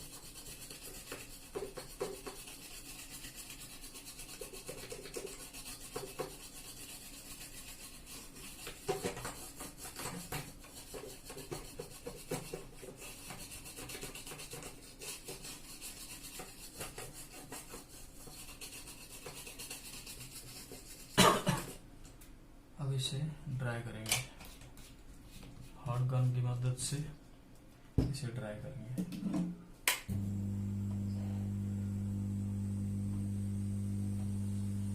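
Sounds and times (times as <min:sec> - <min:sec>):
brush scrubbing circuit board: 0:00.0 - 0:21.2.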